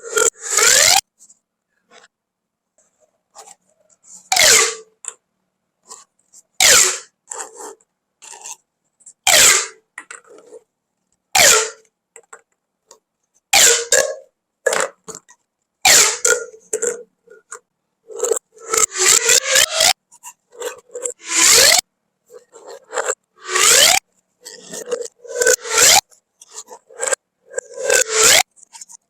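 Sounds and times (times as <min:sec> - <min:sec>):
pop tube ribbed rasps: 0:00.0 - 0:01.0, 0:04.2 - 0:04.9, 0:05.9 - 0:08.6, 0:09.3 - 0:10.5, 0:11.4 - 0:12.4, 0:13.6 - 0:21.8, 0:22.4 - 0:29.0.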